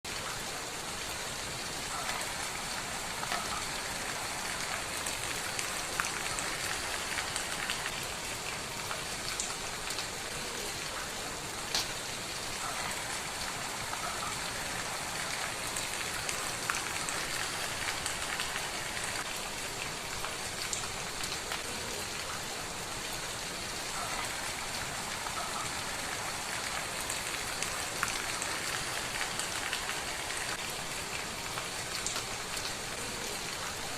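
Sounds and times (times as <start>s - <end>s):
steady rain falling: 0.0s - 33.9s
wood fire crackling and popping: 11.7s - 12.0s.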